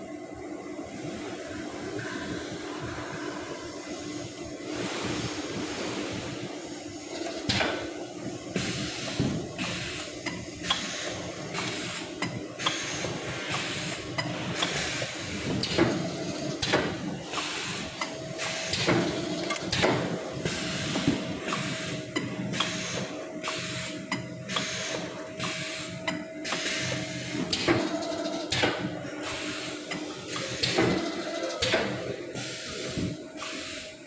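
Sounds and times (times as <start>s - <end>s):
machine hum: 0.0s - 34.0s
machine clicks and clacks: 8.6s - 33.9s.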